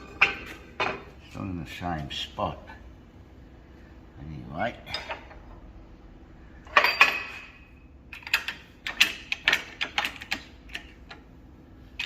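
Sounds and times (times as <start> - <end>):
ringing metal clanks: 6.7 - 7.7
sharp clicks and knocks: 8.1 - 11.3.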